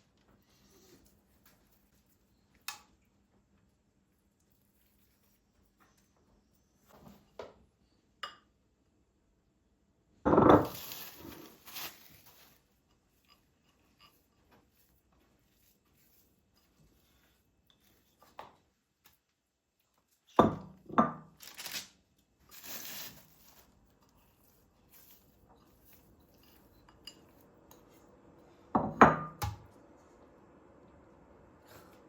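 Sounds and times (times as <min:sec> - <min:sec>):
dishes and cutlery clinking: 0:25.1 - 0:28.0.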